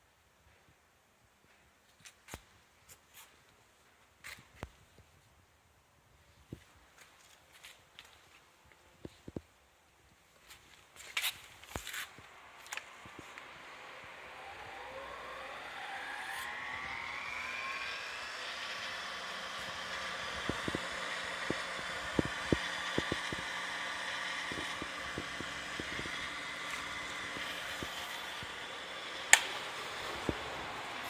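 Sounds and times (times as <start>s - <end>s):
grinder motor whining: 12.2s - 31.0s
loud click: 29.3s - 30.4s.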